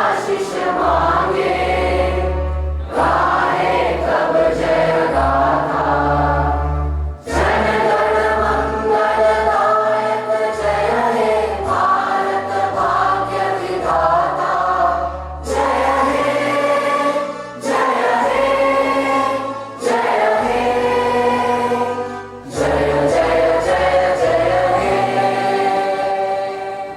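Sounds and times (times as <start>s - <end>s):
sustained low notes: 0.0s - 8.6s
choir singing: 0.0s - 26.9s.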